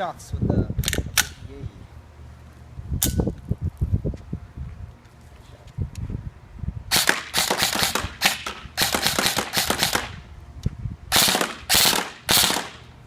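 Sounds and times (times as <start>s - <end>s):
airsoft rifle firing: 6.9s - 10.2s, 11.1s - 12.9s.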